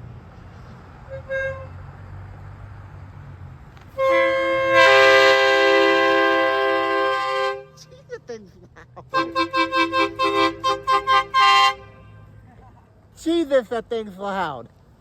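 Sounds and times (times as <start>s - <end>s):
locomotive air horn: 1.0s - 1.8s, 3.9s - 7.9s, 9.1s - 12.5s.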